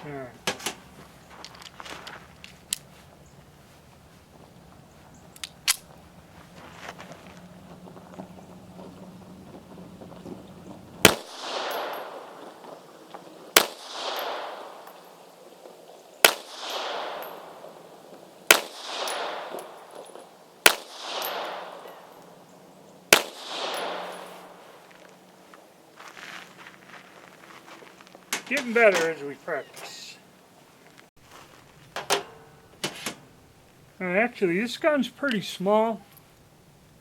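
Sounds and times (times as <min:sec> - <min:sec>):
gunshot echo: 0:11.0 - 0:15.2, 0:16.2 - 0:22.3, 0:23.1 - 0:24.9
pistol shots: 0:11.0 - 0:22.4, 0:23.1 - 0:24.9.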